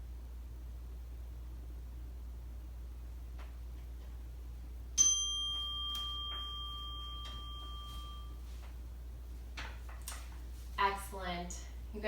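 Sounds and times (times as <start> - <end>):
meditation chime ringing: 5.0 - 8.6.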